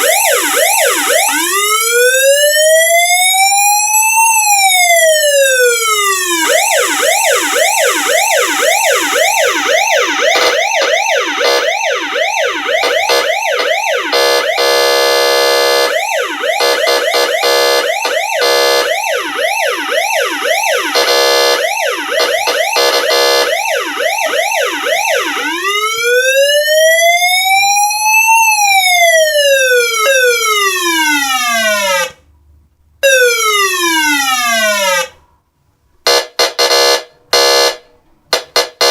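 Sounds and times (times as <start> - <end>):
electronic siren wail and yelp: 0.0 - 32.1, 33.0 - 35.1
harsh steady buzz: 6.5 - 24.2.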